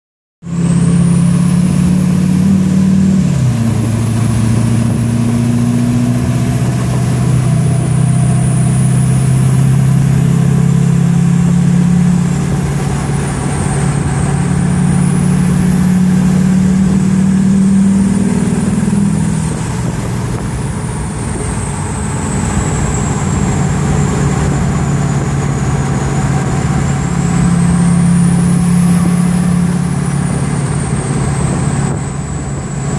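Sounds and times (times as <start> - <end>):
diesel engine running: 0.4 - 32.9
turbocharger whistle: 7.0 - 32.9.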